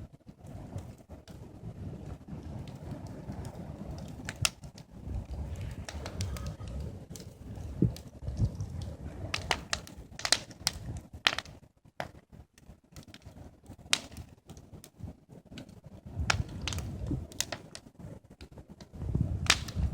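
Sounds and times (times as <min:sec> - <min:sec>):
low rumble: 0:00.0 - 0:09.4
fire crackling: 0:00.0 - 0:19.9.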